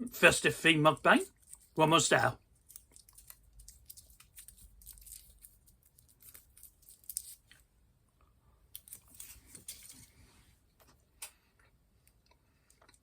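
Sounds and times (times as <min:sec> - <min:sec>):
soft crunches of eating: 0:01.2 - 0:01.8, 0:02.5 - 0:13.0.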